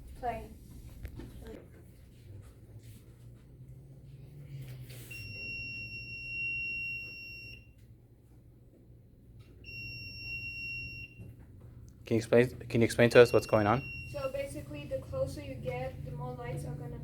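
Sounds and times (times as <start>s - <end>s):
high-pitched buzzer beeps: 5.1s - 7.7s, 9.7s - 11.3s, 13.2s - 14.5s.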